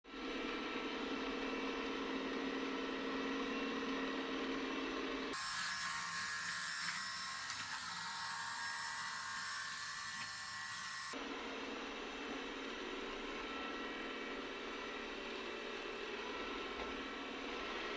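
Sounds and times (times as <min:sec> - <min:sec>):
robot vacuum motor whine: 0:00.2 - 0:17.9.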